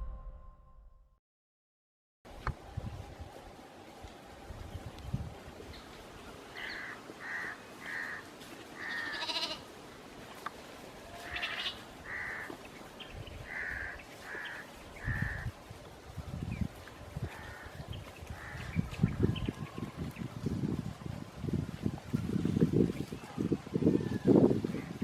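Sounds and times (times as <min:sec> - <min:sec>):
farm animal calls: 0:06.6 - 0:09.6, 0:11.0 - 0:12.6.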